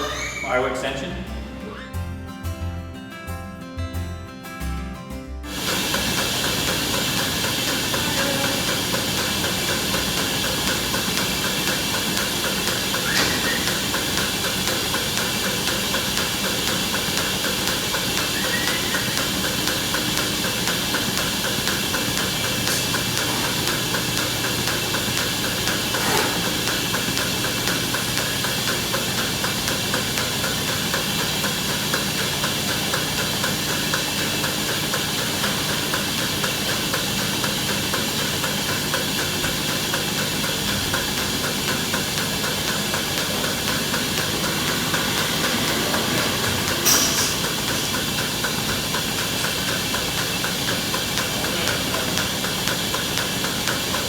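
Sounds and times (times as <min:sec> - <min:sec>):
milking machine hiss and hum: 0:00.0 - 0:01.8, 0:05.5 - 0:54.0
sharp click: 0:42.2 - 0:48.8.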